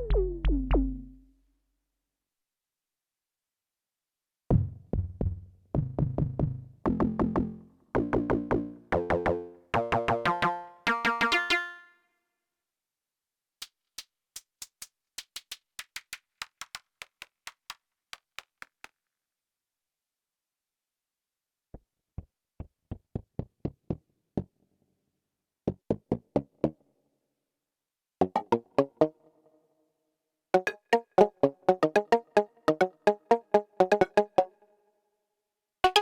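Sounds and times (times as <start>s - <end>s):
synthesizer plucked notes: 0.0s - 1.3s, 6.9s - 11.9s, 30.6s - 34.6s.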